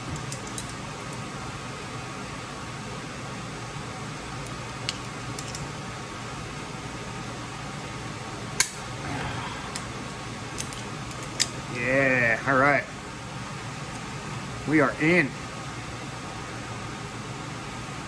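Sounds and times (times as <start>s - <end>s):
fan-like hum: 0.0s - 18.0s
metallic tool clicks: 0.2s - 0.8s, 4.4s - 5.7s, 8.6s - 8.8s.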